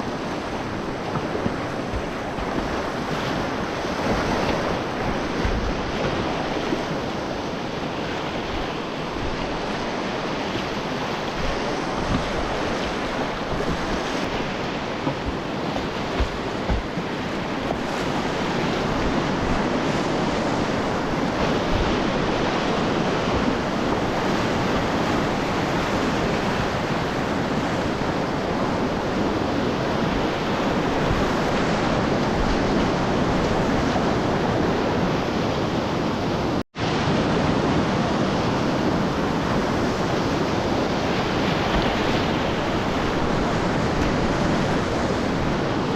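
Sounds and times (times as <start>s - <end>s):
river rapids rushing: 0.0s - 27.7s, 36.8s - 45.9s
low knocks: 11.4s - 17.9s.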